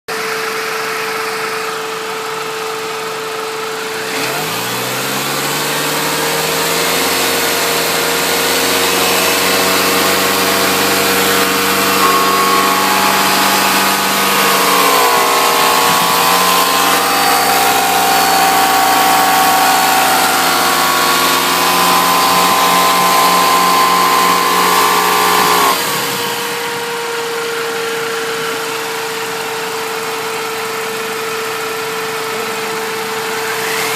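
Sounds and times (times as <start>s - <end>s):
car engine idling and revving: 0.1s - 33.9s
high steady whine: 5.1s - 31.2s.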